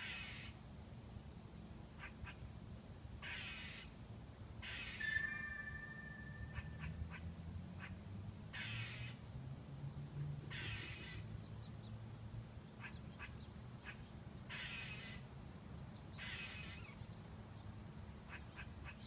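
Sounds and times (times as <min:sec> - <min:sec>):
squirrel raspy calls: 0:00.0 - 0:00.6, 0:02.0 - 0:02.4, 0:03.2 - 0:03.9, 0:04.6 - 0:09.2, 0:10.5 - 0:11.2, 0:12.8 - 0:15.2, 0:16.1 - 0:17.0, 0:18.2 - 0:19.0.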